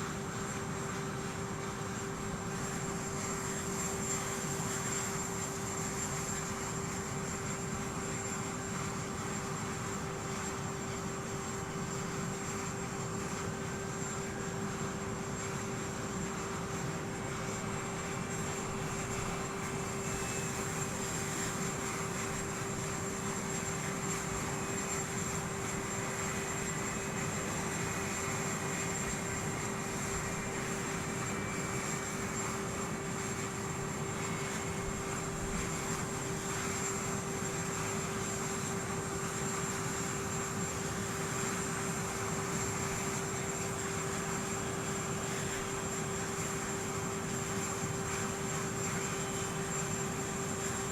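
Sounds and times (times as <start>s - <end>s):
aircraft engines droning: 0.0s - 50.9s
thin high whine: 11.2s - 50.9s.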